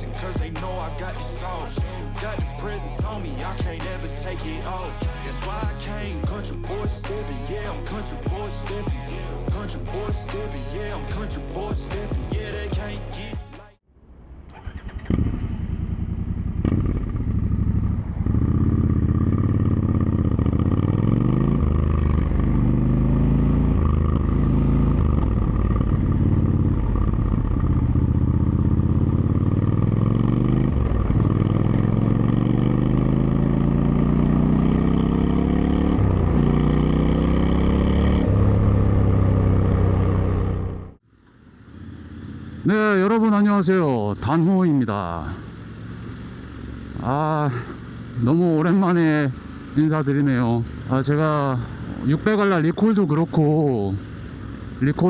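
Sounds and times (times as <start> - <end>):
motorcycle engine accelerating: 0.0 - 13.8, 14.4 - 55.0.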